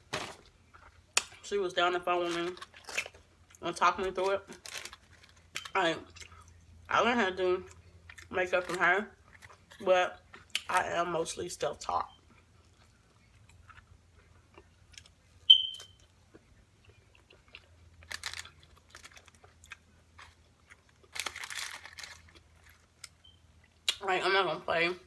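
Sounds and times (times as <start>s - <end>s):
chewing fried food: 0.4s - 1.4s, 2.3s - 6.9s, 7.6s - 10.8s, 12.1s - 24.0s.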